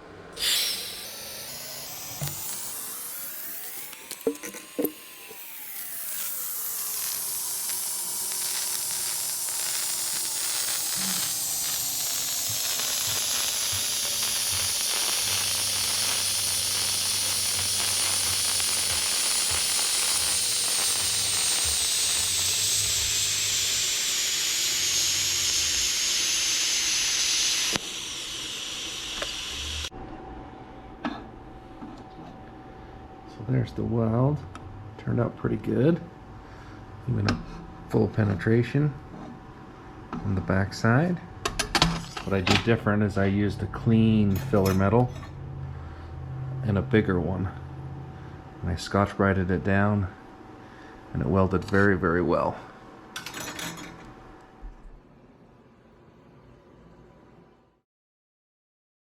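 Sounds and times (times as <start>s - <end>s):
welding arc hissing: 0.4s - 29.9s.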